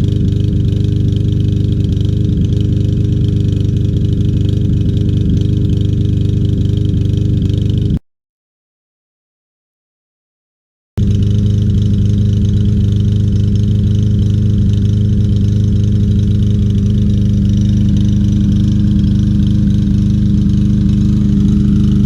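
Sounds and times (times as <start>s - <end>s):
lawn mower engine missing: 11.0s - 22.0s.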